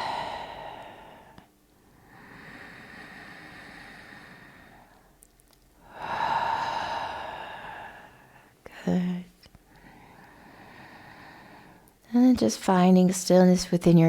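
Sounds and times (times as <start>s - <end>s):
person breathing slowly: 0.0s - 5.2s, 5.8s - 8.7s, 9.7s - 12.0s.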